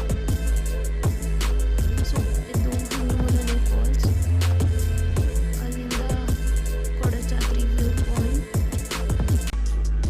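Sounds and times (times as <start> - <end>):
electronic music with heavy bass: 0.0 - 10.0.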